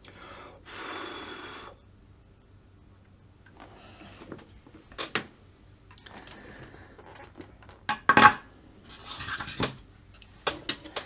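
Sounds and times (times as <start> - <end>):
small tools clattering on workbench: 7.1 - 8.5.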